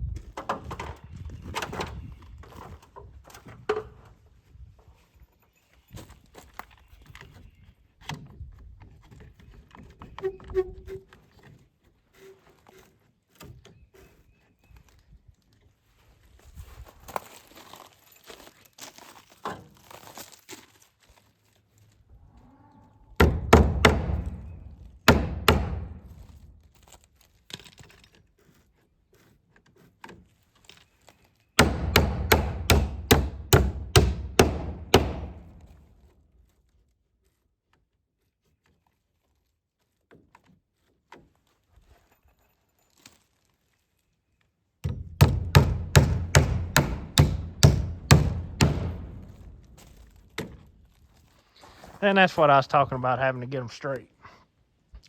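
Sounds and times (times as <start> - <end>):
hammer driving nails into wood: 23.2 - 26.4, 31.6 - 35.8, 44.8 - 50.6.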